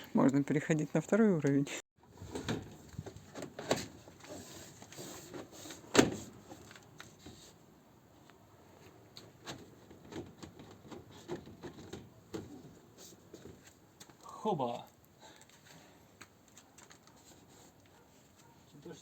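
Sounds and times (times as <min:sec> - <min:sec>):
siding panels clicking and rattling: 0:02.2 - 0:04.2, 0:09.2 - 0:12.6.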